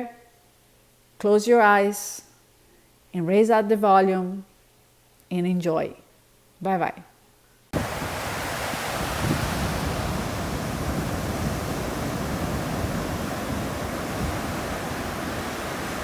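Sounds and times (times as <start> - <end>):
water rushing: 7.8 - 16.0
wind rumble on microphone: 7.8 - 16.0.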